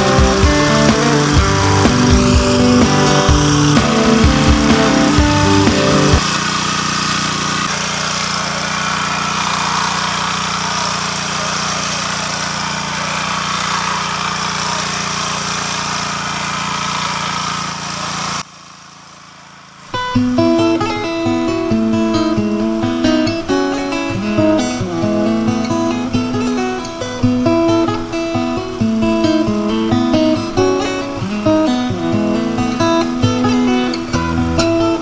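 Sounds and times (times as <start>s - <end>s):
strummed guitar music: 0.0s - 6.4s, 19.9s - 35.0s
rotary tiller engine running: 0.0s - 35.0s.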